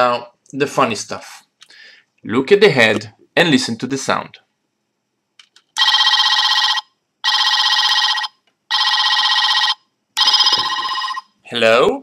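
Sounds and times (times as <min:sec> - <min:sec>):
electronic telephone ring from toy: 0:05.8 - 0:11.4.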